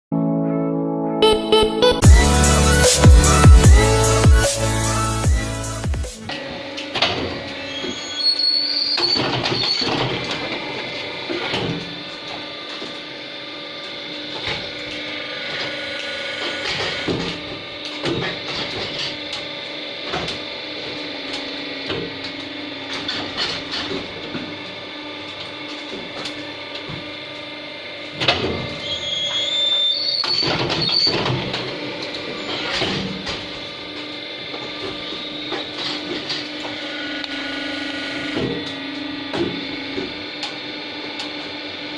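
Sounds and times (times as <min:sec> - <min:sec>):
moulding machine hum and whine: 0:01.9 - 0:41.9
high whistling squeals: 0:07.6 - 0:10.0, 0:28.8 - 0:31.4
machine clanks and clicks: 0:13.8 - 0:24.5, 0:30.2 - 0:41.5.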